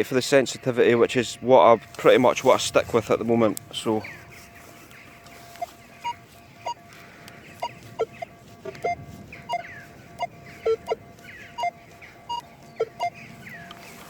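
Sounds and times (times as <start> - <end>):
metal detector threshold tone: 1.2 - 13.8
metal detector beeps: 5.3 - 13.8.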